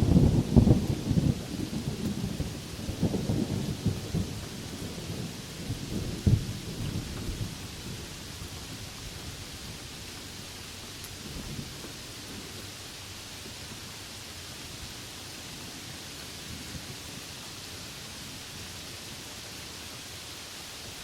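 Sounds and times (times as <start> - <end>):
thunder rumbling: 0.0 - 8.1
steady rain: 0.0 - 21.0.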